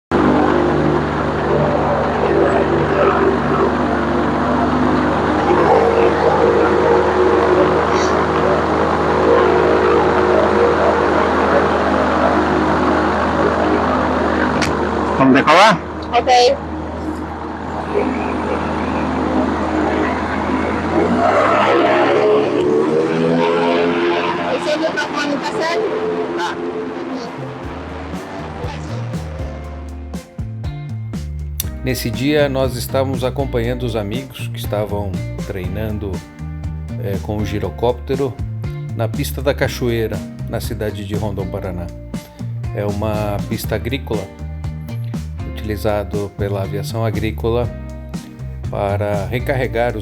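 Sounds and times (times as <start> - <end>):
aircraft engine running: 0.0 - 39.0, 40.1 - 46.9
intercom hiss: 0.2 - 16.0, 17.5 - 29.7.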